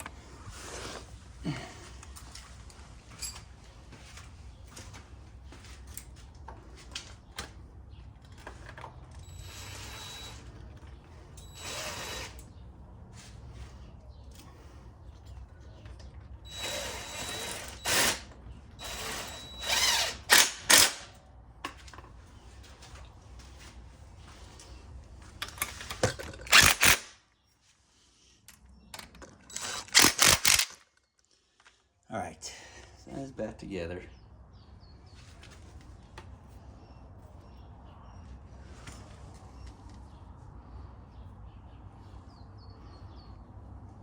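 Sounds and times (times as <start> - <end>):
short mechanical tool runs: 26.5 - 27.1, 29.5 - 30.7.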